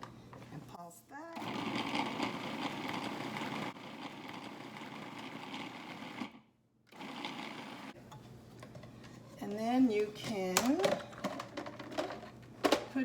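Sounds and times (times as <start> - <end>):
food processor motor pulsing: 1.4 - 8.0.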